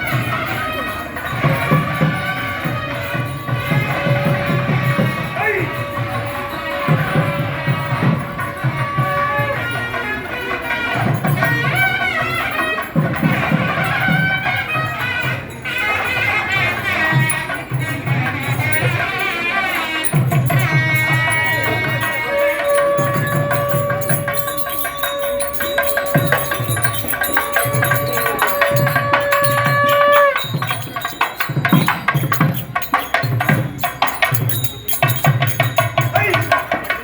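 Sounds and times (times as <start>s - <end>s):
drums beating steadily: 0.0s - 37.0s
melody instrument: 18.5s - 32.2s.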